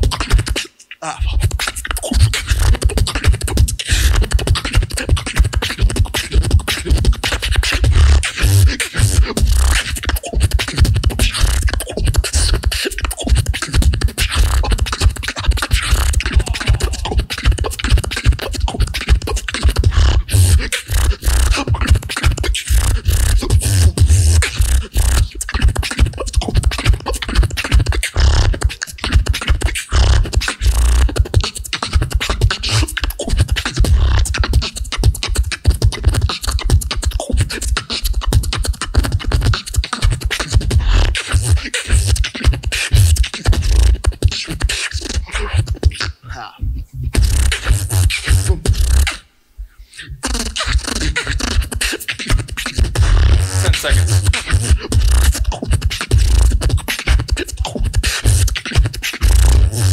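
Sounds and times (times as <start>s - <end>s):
beatboxing drum patterns: 0.0s - 59.9s
deep bass line: 46.6s - 48.8s.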